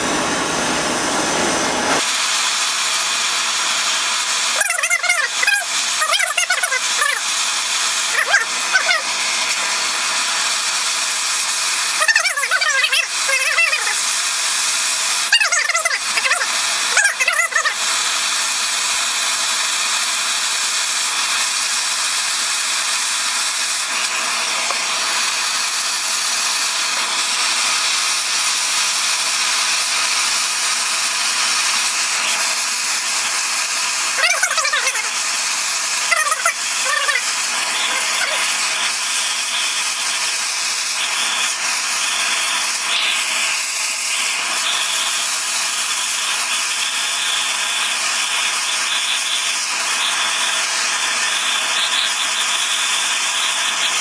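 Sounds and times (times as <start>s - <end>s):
gas torch hissing: 0.0s - 54.0s.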